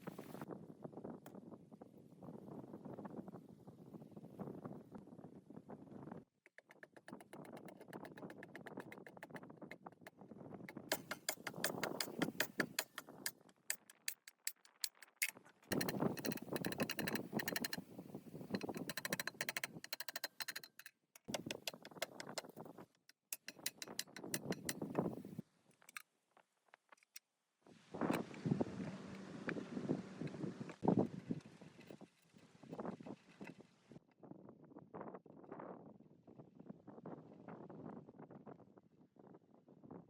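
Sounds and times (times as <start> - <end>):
hand tools clicking on metal: 10.7 - 26.0.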